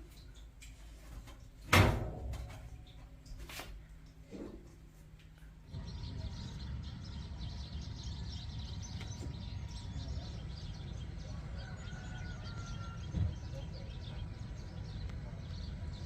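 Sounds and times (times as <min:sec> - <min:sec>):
steady low rumble: 0:01.9 - 0:16.0
small birds chirping: 0:05.2 - 0:16.0.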